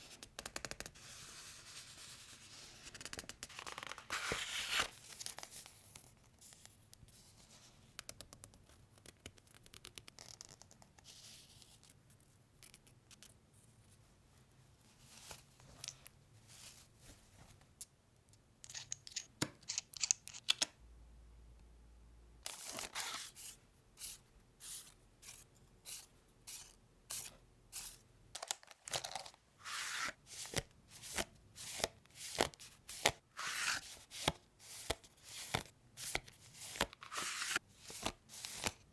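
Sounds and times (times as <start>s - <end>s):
paper tearing: 33.4s - 33.8s, 36.7s - 37.6s.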